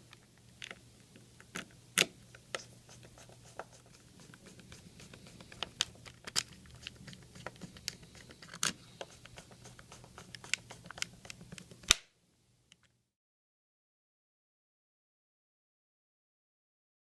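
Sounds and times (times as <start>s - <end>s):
faint steady hum: 0.0s - 13.1s
plastic device clicks and rustles: 5.4s - 9.4s, 10.2s - 12.0s
sharp loud click: 11.9s - 12.1s.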